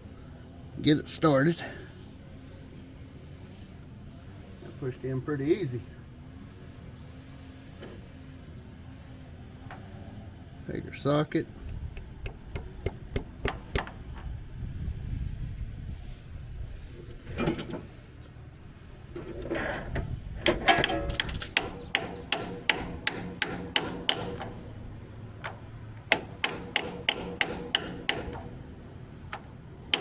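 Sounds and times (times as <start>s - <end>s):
hammer tapping metal socket: 20.4s - 24.5s.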